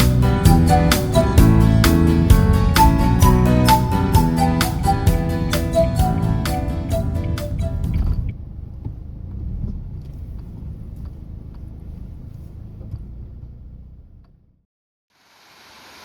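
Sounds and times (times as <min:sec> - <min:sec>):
piano-backed music: 0:00.0 - 0:08.1
car rumbling from inside: 0:00.0 - 0:14.6.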